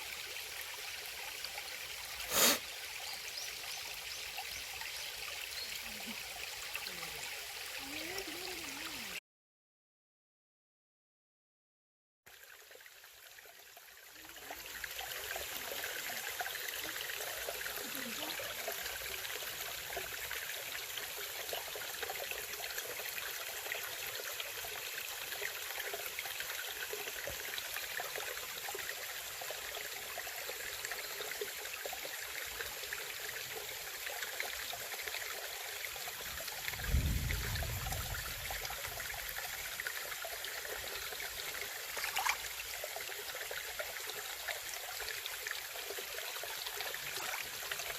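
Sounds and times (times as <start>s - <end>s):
water rushing over rocks: 2.2s - 2.6s, 41.3s - 42.6s.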